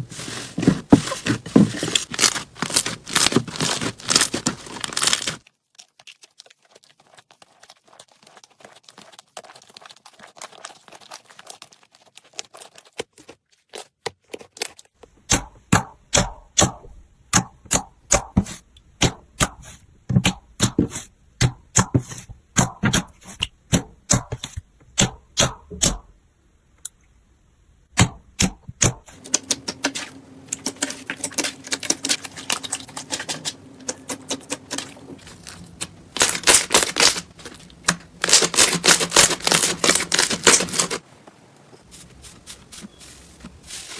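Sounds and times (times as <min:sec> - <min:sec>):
slime squishing with clicking pops: 0:14.6 - 0:26.1, 0:28.0 - 0:40.9.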